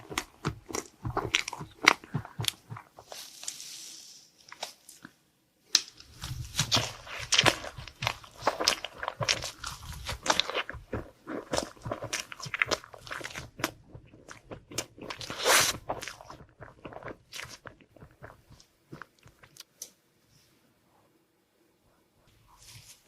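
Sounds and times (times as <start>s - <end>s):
crunchy chewing of a sweet: 0.0s - 3.5s, 6.2s - 19.8s.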